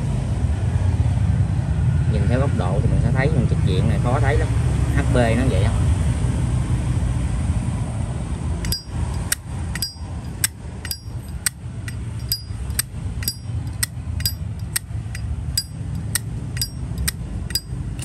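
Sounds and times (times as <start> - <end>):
steady low hum: 8.6 - 18.0.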